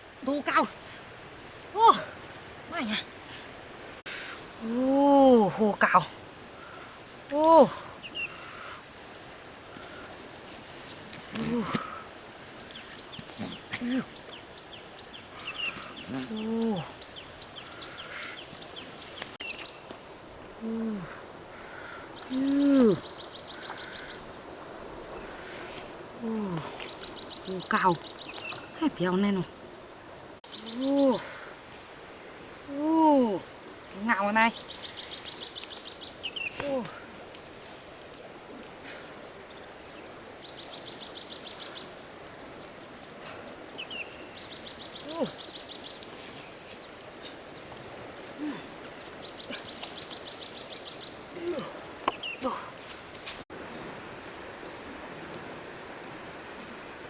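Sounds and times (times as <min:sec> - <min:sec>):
steady high hiss: 0:00.0 - 0:57.0
insect or bird ticking: 0:00.1 - 0:55.0
person calling ooh: 0:16.1 - 0:17.0, 0:20.6 - 0:21.2, 0:22.3 - 0:23.1, 0:32.7 - 0:33.5, 0:45.0 - 0:45.4, 0:51.3 - 0:51.8.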